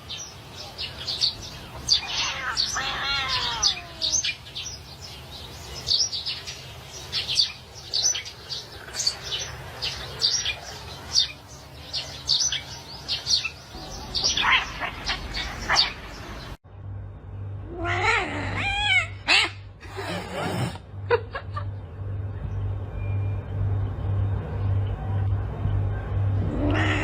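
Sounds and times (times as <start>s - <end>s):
small birds chirping: 0.0s - 16.6s.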